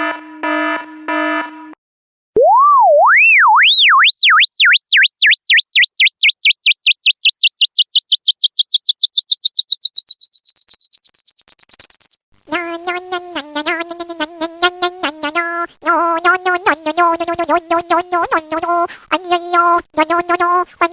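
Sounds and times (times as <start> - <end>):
warbling electronic sine tone: 2.4 - 12.2
buzzy pulsing synthesized tone: 6.7 - 12.2.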